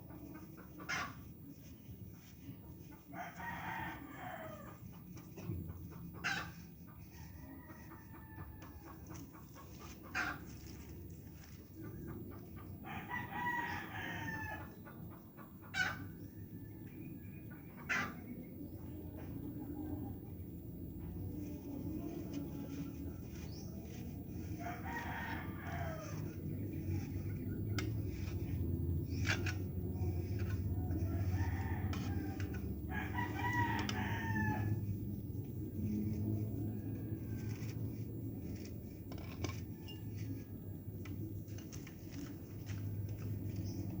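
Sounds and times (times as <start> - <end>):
rooster crowing: 3.1 - 4.8, 7.1 - 9.2, 12.8 - 14.8, 21.4 - 27.2, 27.9 - 35.1
steady low rumble: 18.3 - 44.0.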